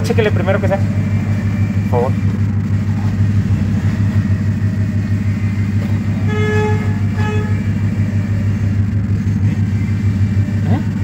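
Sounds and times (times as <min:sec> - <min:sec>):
car engine idling with misfire: 0:00.0 - 0:11.0
car horn toots: 0:05.0 - 0:08.8.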